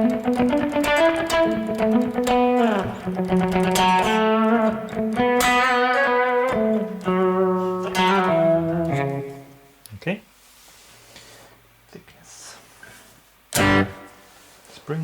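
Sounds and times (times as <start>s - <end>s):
electric guitar with reverb: 0.0s - 9.7s, 13.5s - 14.2s.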